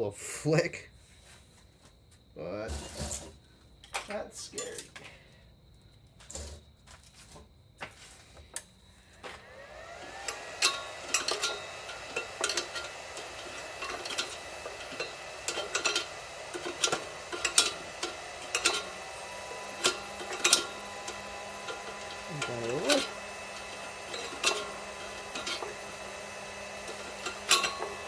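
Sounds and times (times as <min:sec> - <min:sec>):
compressor motor whining: 0:08.6 - 0:28.0.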